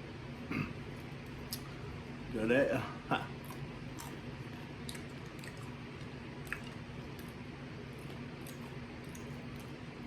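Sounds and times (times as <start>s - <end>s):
steady low hum: 0.0s - 10.0s
person chewing food: 3.3s - 10.0s.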